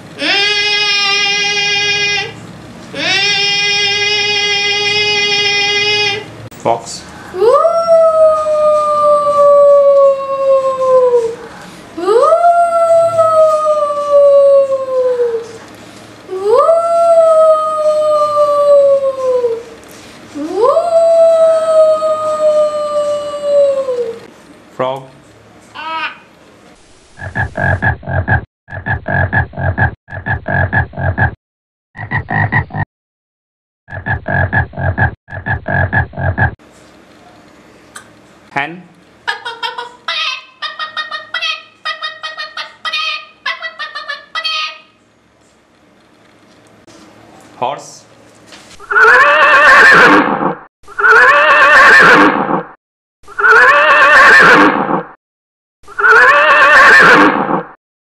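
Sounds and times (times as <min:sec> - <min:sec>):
frog-like croaking: 0:27.2 - 0:31.4, 0:32.0 - 0:32.8, 0:33.9 - 0:36.6
girl imitating horse whinnies: 0:48.9 - 0:50.2, 0:50.9 - 0:52.4, 0:53.3 - 0:54.8, 0:55.9 - 0:57.5.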